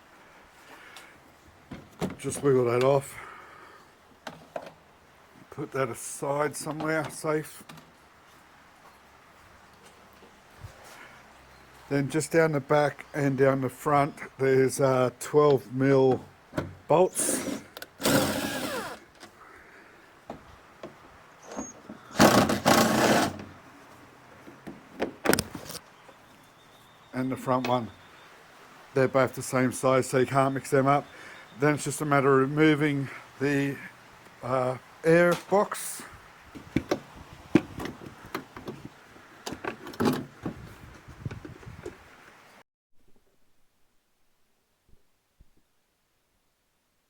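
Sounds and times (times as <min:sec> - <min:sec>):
rasping burst: 0:17.2 - 0:19.0.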